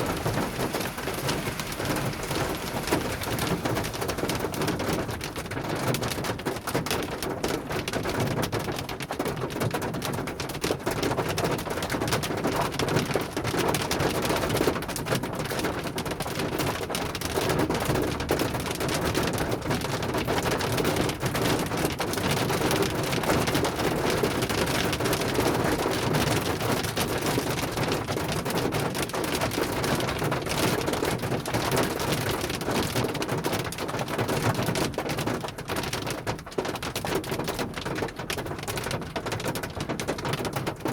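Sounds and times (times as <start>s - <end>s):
hail and rain pelting down: 0.0s - 40.9s.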